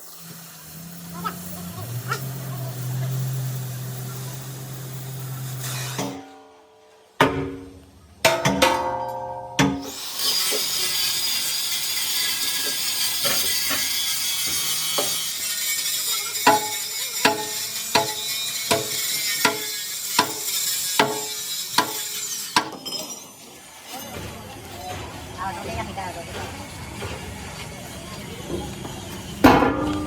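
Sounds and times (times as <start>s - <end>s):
ringing metal strikes: 7.2s - 9.9s, 29.4s - 30.0s.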